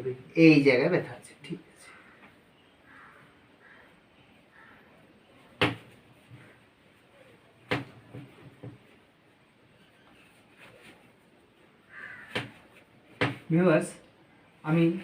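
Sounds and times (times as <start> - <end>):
sharp knocks: 5.6 - 5.9, 7.7 - 8.8, 12.2 - 12.6, 13.2 - 13.5.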